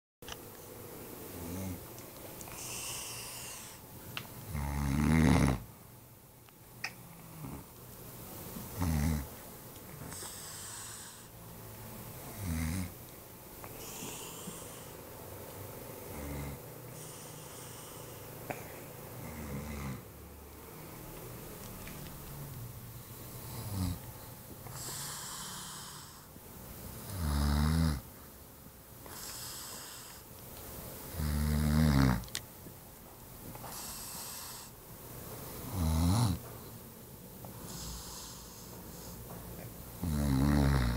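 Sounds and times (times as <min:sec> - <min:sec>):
pet snoring: 0:01.4 - 0:01.8, 0:02.6 - 0:03.8, 0:04.4 - 0:05.7, 0:07.2 - 0:07.7, 0:08.8 - 0:09.3, 0:10.0 - 0:11.4, 0:12.2 - 0:13.0, 0:13.8 - 0:15.0, 0:16.0 - 0:18.2, 0:19.1 - 0:20.1, 0:23.3 - 0:24.1, 0:24.7 - 0:26.3, 0:27.0 - 0:28.1, 0:29.1 - 0:30.2, 0:31.1 - 0:32.3, 0:33.6 - 0:34.8, 0:35.6 - 0:36.5, 0:37.6 - 0:39.2, 0:40.0 - 0:40.9.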